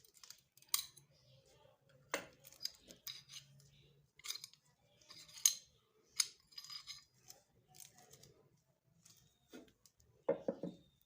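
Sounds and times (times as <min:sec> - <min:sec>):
metal parts scraping: 0:06.2 - 0:07.4.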